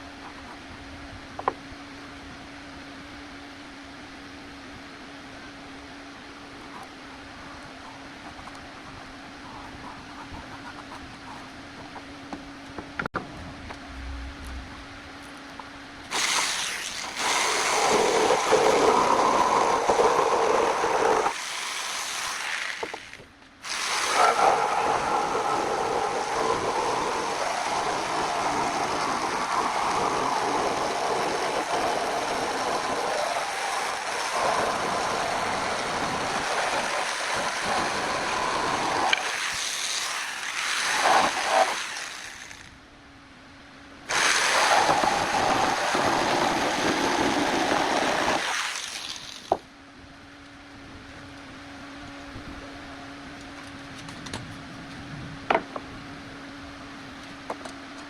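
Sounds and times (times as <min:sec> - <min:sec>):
jigsaw cutting wood: 0:16.1 - 0:42.7, 0:44.1 - 0:49.6.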